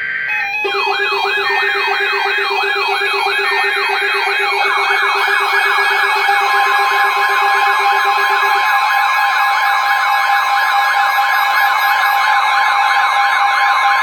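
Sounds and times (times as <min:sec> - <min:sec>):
electronic siren yelp: 0:00.0 - 0:14.0.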